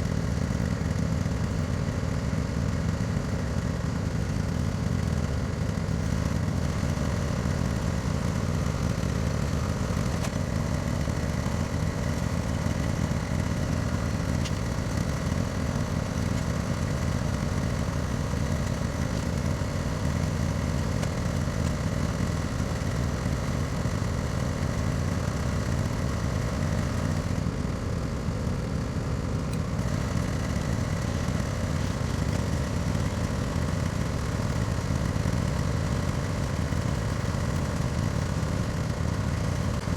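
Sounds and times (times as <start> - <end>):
lawn mower engine running: 0.0 - 39.9.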